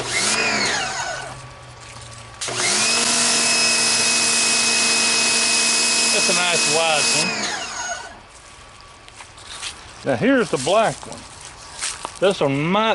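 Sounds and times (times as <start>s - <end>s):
pressure washer motor whine: 0.0s - 1.4s, 2.4s - 8.2s.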